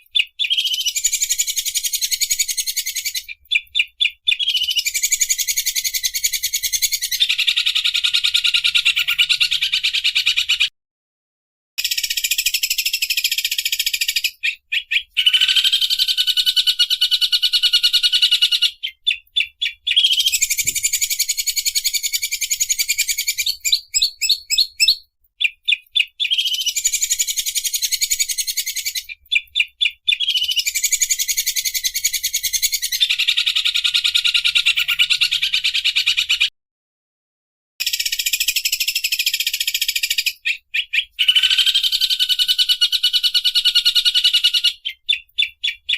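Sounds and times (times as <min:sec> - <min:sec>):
bird singing rapid rattling trills: 0:00.1 - 0:10.6, 0:11.8 - 0:36.2.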